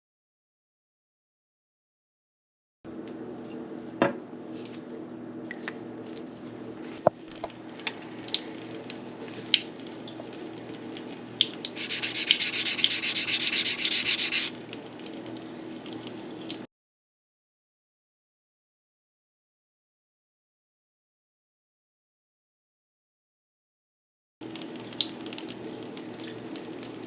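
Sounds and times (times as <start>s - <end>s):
blade scraping on whetstone: 11.8s - 14.5s.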